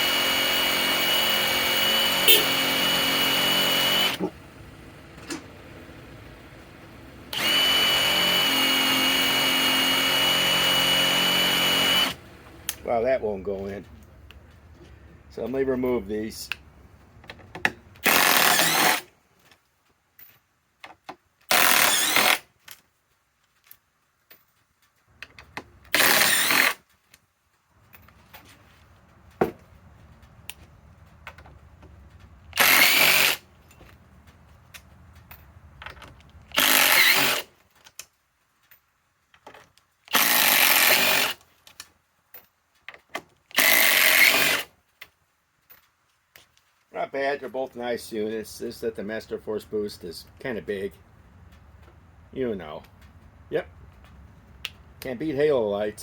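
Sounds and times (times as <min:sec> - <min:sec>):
impact driver hammering screws: 0:00.0 - 0:04.3, 0:07.3 - 0:12.2, 0:18.0 - 0:19.1, 0:21.5 - 0:22.4, 0:25.9 - 0:26.8, 0:32.6 - 0:33.4, 0:36.5 - 0:37.5, 0:40.1 - 0:41.4, 0:43.5 - 0:44.7.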